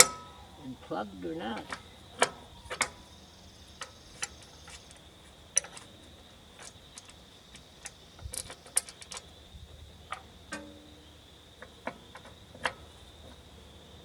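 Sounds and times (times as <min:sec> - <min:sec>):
wrench clicking on bolts: 0:05.6 - 0:05.9, 0:06.6 - 0:09.3.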